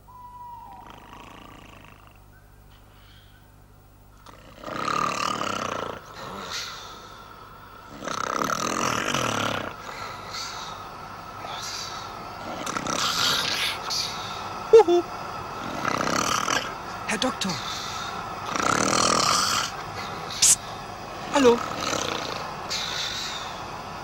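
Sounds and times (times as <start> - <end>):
man snoring heavily: 0.7 - 2.2, 4.2 - 14.4, 15.6 - 16.8, 17.6 - 23.8.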